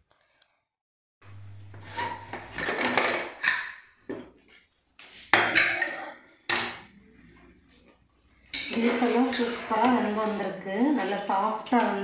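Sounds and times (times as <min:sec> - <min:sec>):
metal cookware clattering: 0:01.8 - 0:04.4, 0:05.3 - 0:06.9, 0:08.5 - 0:12.0.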